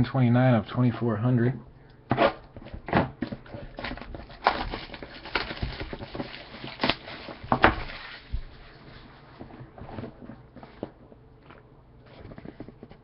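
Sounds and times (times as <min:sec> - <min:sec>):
cardboard and wrapper crinkling: 0:02.6 - 0:11.0.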